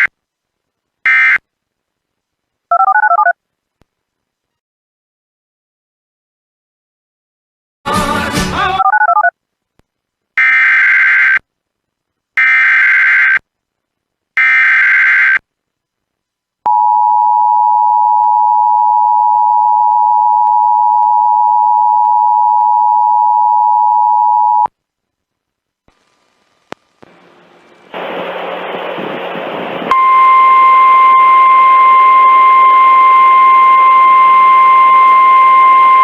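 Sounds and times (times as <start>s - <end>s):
two-tone alert signal: 29.9s - 36.0s
warbling data tones: 29.9s - 36.0s.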